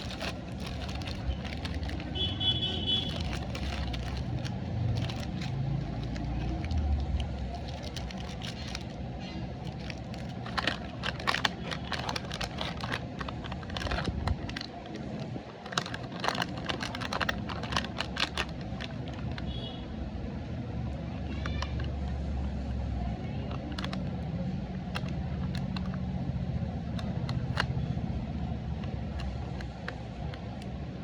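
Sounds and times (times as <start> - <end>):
plastic wrappers crinkling: 0.0 - 19.6, 27.0 - 27.8
low background rumble: 0.0 - 31.0.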